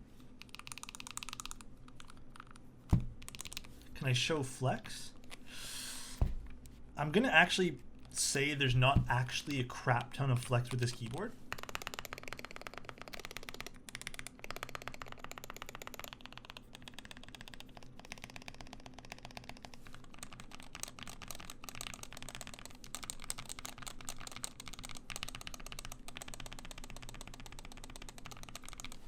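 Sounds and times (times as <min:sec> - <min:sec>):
mechanical keyboard typing: 0:00.4 - 0:02.6, 0:03.2 - 0:03.7, 0:09.5 - 0:29.0.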